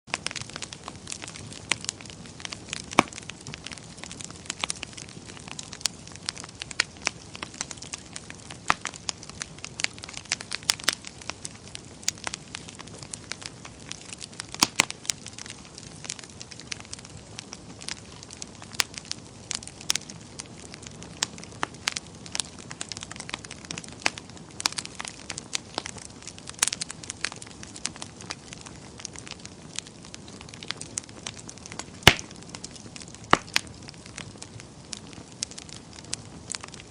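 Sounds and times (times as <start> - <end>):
fire crackling and popping: 0.0 - 36.9
wood fire hissing: 0.1 - 36.9.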